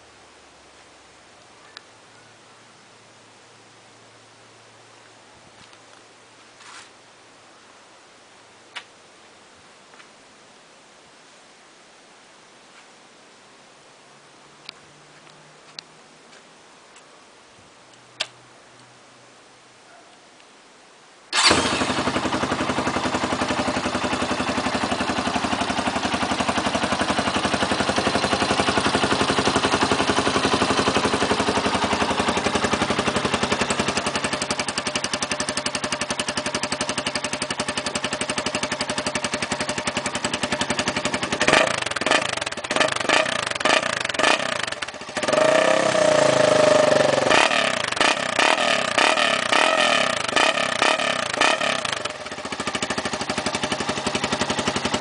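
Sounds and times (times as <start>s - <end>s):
motorcycle engine idling and revving: 21.3s - 55.0s.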